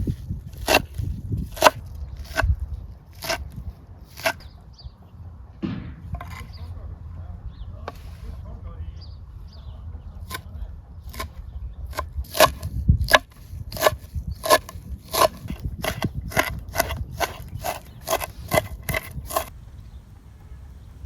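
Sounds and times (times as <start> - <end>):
chopping wood: 0.6 - 2.5, 4.2 - 4.4, 5.6 - 6.7, 11.9 - 19.5
low rumble: 5.0 - 11.8.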